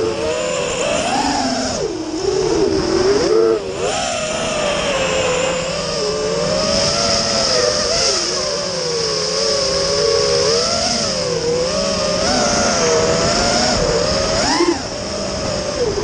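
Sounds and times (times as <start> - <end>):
drone motors whining: 0.0 - 16.0.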